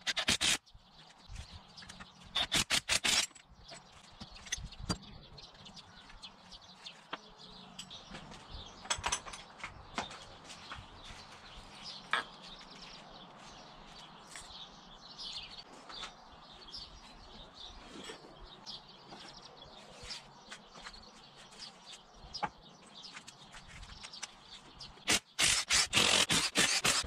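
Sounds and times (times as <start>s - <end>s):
birds chirping: 0.1s - 27.0s
sharp clicks and knocks: 7.1s - 10.3s.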